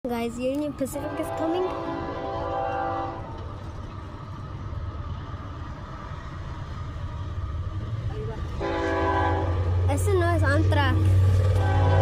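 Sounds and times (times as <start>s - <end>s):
low rumble of train: 0.0s - 12.0s
locomotive air horn chord: 1.0s - 3.3s, 8.6s - 9.6s, 11.6s - 12.0s.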